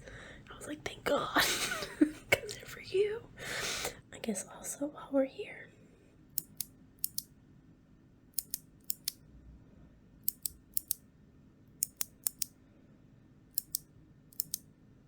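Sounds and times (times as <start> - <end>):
clicky keyboard switch presses: 6.4 - 7.3, 8.4 - 9.2, 10.2 - 11.0, 11.8 - 12.6, 13.6 - 14.7.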